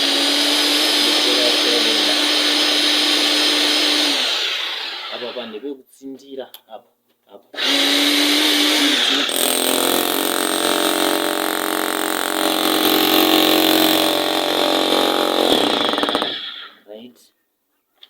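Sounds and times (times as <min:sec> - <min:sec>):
jackhammer hammering: 0:00.0 - 0:05.2, 0:07.6 - 0:16.8.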